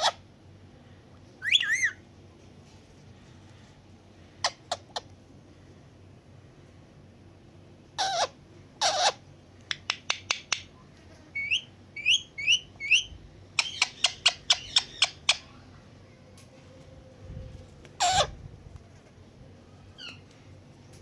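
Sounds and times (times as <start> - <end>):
parrot chirping: 1.4 - 2.0, 8.0 - 9.2, 11.4 - 15.6, 18.0 - 18.3
parrot squawking: 1.4 - 2.0, 8.0 - 9.2, 18.0 - 18.4.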